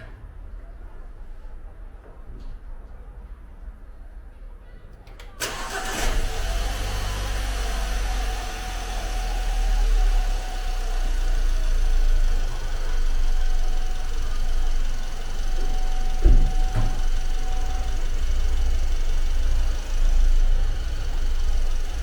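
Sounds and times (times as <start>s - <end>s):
car engine starting and idling: 5.1s - 22.0s.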